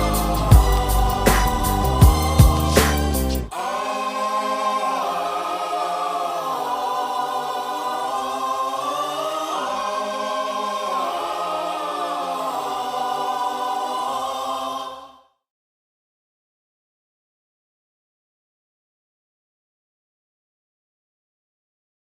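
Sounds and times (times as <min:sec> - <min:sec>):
choir-like sustained voices: 0:00.0 - 0:15.4.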